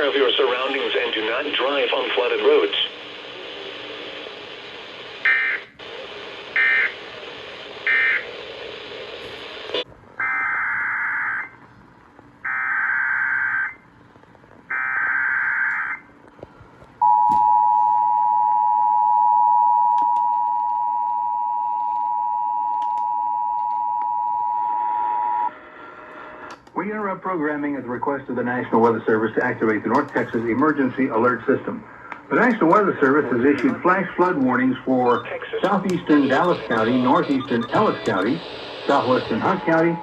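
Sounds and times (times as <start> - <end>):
digital data bursts: 34.9 - 40.0.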